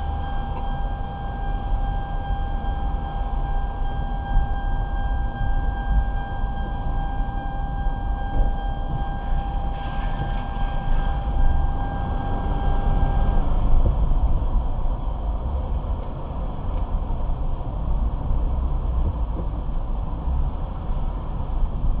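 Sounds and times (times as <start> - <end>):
car cabin rumble: 0.0 - 22.0
steady tone: 0.0 - 22.0.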